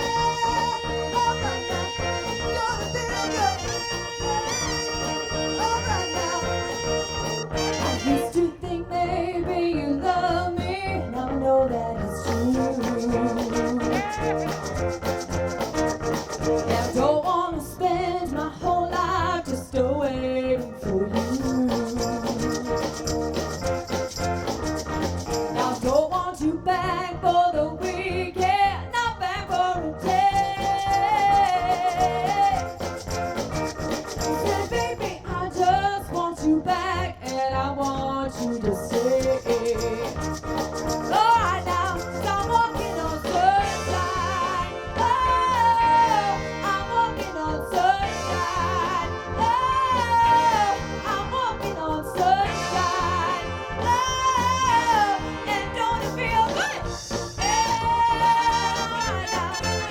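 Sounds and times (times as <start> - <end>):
horn section: 0.0 - 8.8, 12.2 - 17.2, 39.1 - 59.9
soul band playing: 0.0 - 59.9.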